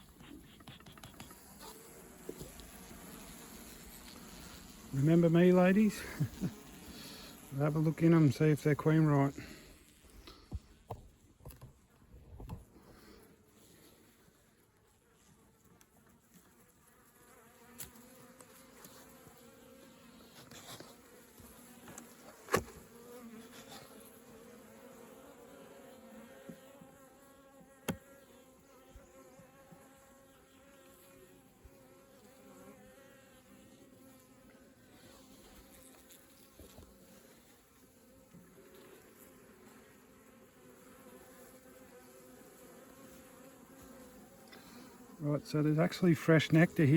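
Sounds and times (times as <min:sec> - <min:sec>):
honeybees buzzing: 0:00.0 - 0:11.9, 0:16.0 - 0:46.9.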